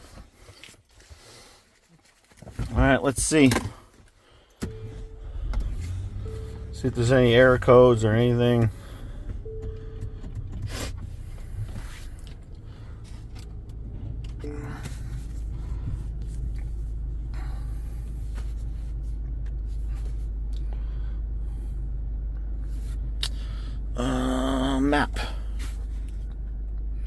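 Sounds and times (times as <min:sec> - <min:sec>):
short tone: 0:04.6 - 0:11.3
low engine rumble in car cabin: 0:04.6 - 0:27.0.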